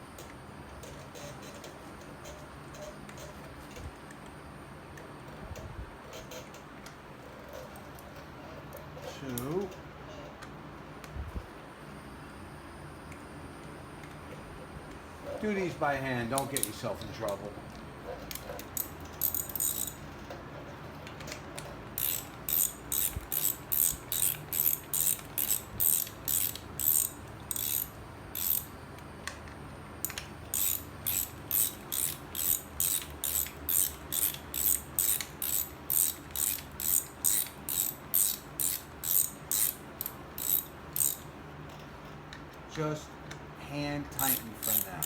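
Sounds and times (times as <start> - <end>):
hand ratchet clicking: 16.3 - 17.4, 18.3 - 20.1, 21.3 - 28.7, 30.0 - 41.3, 44.2 - 45.0.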